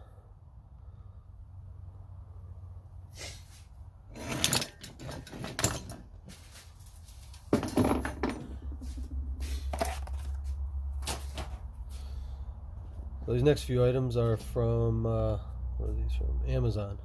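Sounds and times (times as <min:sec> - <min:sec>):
tools clattering on a surface: 0:04.1 - 0:06.6, 0:07.3 - 0:10.3.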